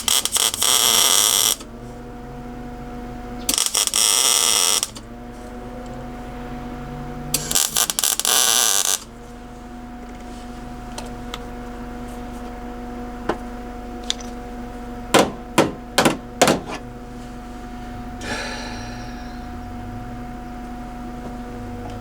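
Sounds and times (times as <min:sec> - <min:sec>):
low hum: 0:09.2 - 0:22.0
hammer on sheet metal: 0:15.2 - 0:16.8.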